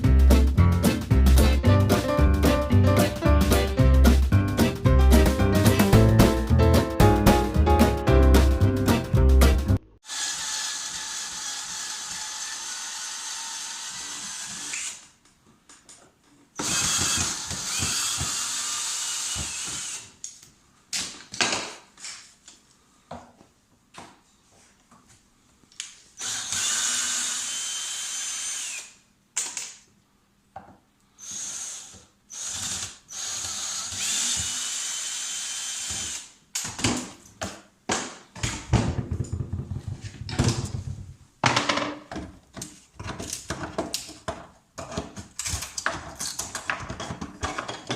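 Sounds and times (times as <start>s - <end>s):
power drill whine: 10.1s - 15.1s, 16.6s - 20.1s, 26.2s - 29.0s, 31.2s - 36.3s.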